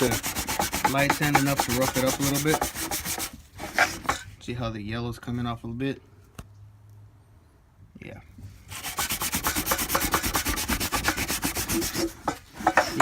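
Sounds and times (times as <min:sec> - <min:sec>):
sandpaper scrubbing plastic: 0:00.0 - 0:04.2, 0:08.7 - 0:13.0.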